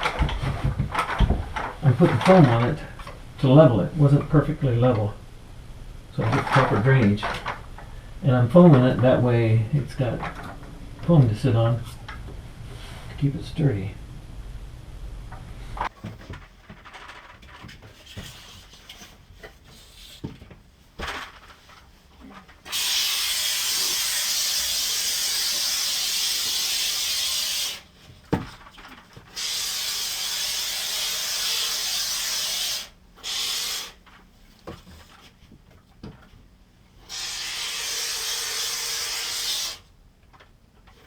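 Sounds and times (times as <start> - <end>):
spray foam can hissing: 22.7 - 27.9, 29.3 - 34.0, 37.0 - 39.9.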